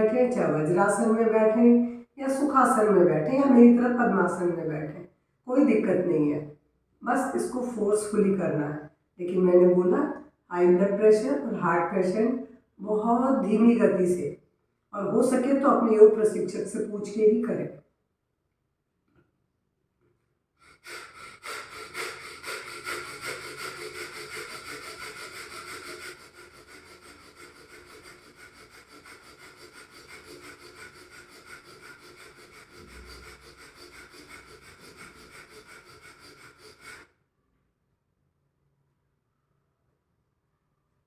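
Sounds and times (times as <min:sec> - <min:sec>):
rapid forceful nose breathing: 0:20.6 - 0:37.2.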